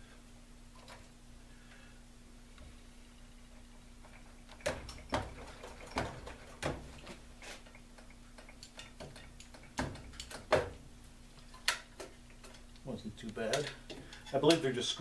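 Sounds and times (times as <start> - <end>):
capacitors snapping off with cracks: 8.0 - 10.8, 11.5 - 14.7.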